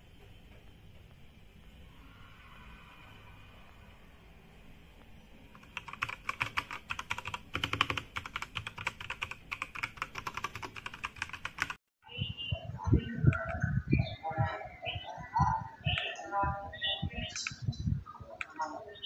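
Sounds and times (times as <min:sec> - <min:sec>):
mechanical keyboard typing: 0:05.5 - 0:11.8.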